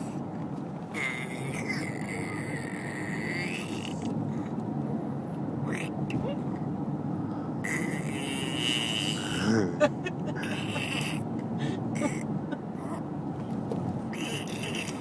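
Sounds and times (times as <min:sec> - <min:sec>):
steady low rumble: 0:03.8 - 0:15.0
person making mouth noises: 0:07.7 - 0:09.8.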